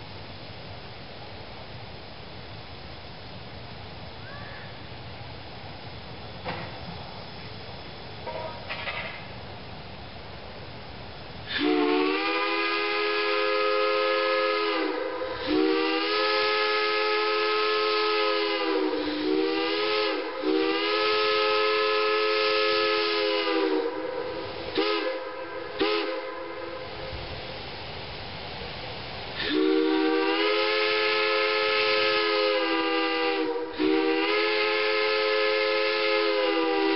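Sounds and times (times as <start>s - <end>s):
steam hissing: 0.0s - 36.9s
steam locomotive chime whistle: 8.2s - 8.7s, 11.5s - 27.1s, 29.4s - 36.9s.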